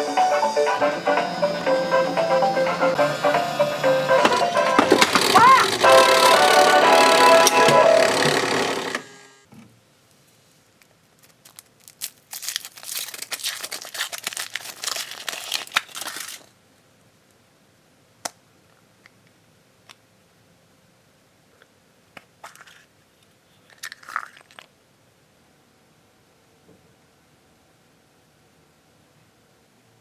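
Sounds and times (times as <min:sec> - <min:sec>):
foil wrapper crinkling and tearing: 0:10.7 - 0:16.6, 0:23.7 - 0:24.7.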